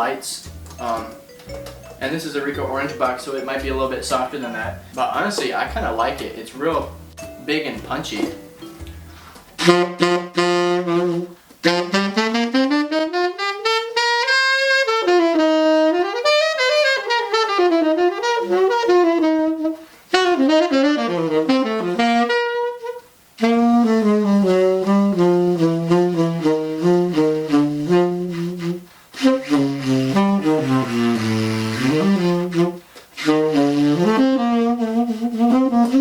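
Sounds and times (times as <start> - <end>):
jazz saxophone playing: 0.0 - 36.0
player breathing: 8.8 - 9.6.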